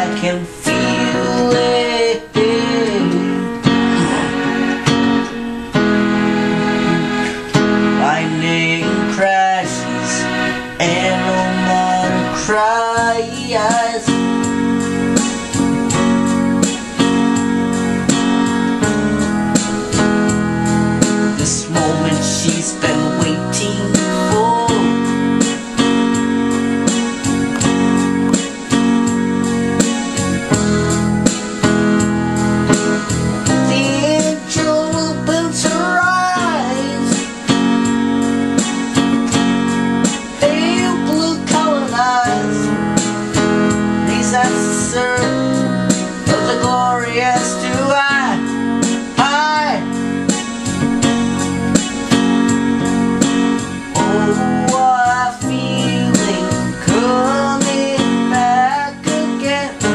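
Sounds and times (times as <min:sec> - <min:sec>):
steady beat: 0:00.0 - 0:10.2, 0:10.8 - 0:59.9
electric piano chords: 0:00.0 - 0:59.9
rock ballad played by band: 0:00.0 - 0:59.9
sliding lead melody: 0:00.0 - 0:59.9.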